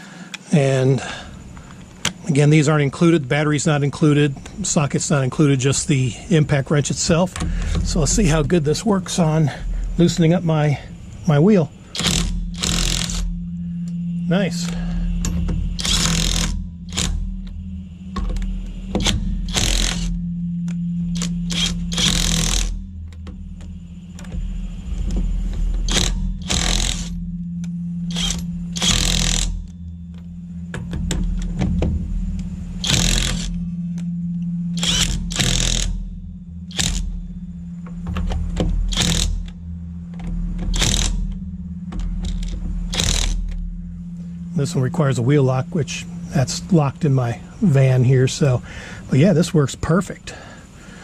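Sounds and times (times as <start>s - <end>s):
steady low hum: 0.0s - 51.0s
impact wrench bursts: 7.0s - 33.7s, 34.8s - 43.8s.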